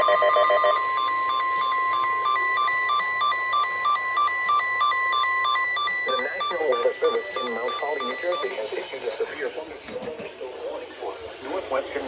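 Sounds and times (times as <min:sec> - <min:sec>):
steady alarm tone: 0:00.0 - 0:08.8
two-pitch electronic alarm beeping: 0:00.0 - 0:08.8.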